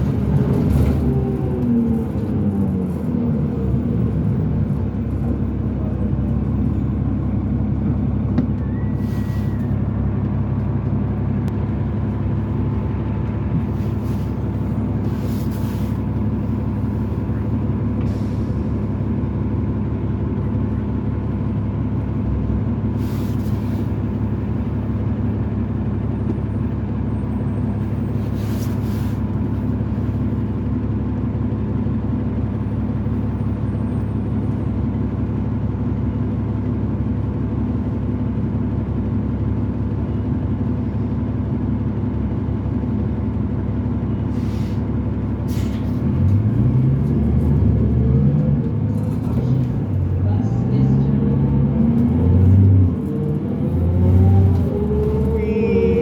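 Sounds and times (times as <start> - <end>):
bus diesel engine running: 0.0 - 56.0
air brake hisses: 8.9 - 9.7, 44.3 - 44.9, 45.5 - 46.0.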